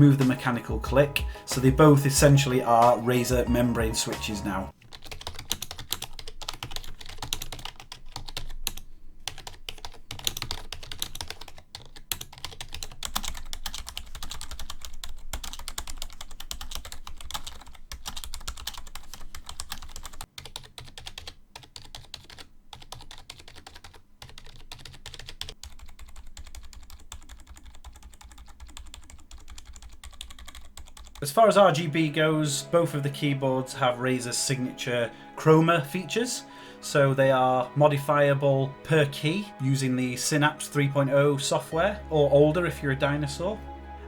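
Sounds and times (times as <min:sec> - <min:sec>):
fast typing on membrane keyboard: 0:04.9 - 0:31.2.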